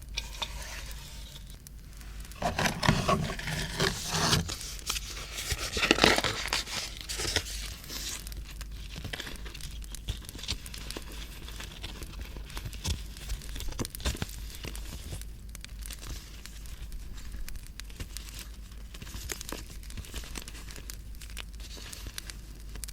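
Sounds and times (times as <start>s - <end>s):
paper crinkling and tearing: 2.2s - 15.2s, 15.8s - 22.9s
small crackles and taps: 4.4s - 22.9s.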